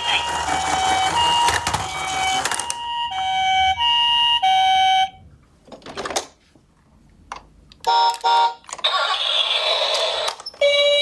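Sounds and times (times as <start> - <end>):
electronic two-tone toy siren: 0.0 - 5.2, 8.9 - 11.0.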